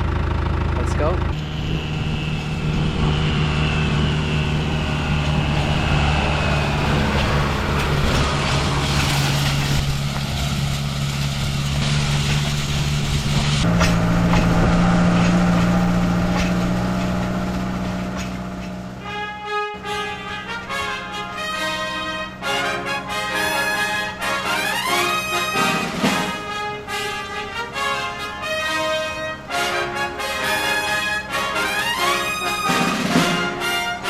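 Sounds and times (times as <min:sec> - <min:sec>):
tractor engine running: 0:00.0 - 0:34.0.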